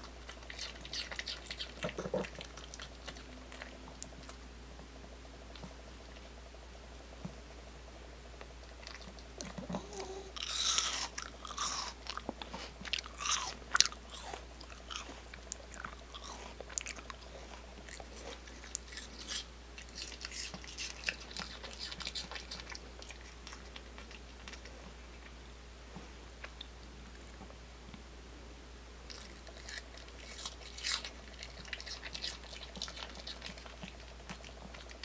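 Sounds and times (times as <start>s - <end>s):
dog crunching apple pieces: 0.0s - 4.4s, 8.6s - 25.4s, 29.1s - 35.0s.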